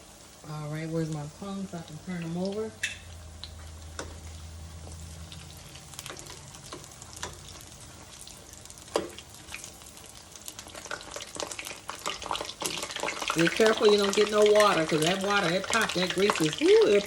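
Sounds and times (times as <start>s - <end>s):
food deep-frying in oil: 0.0s - 17.0s.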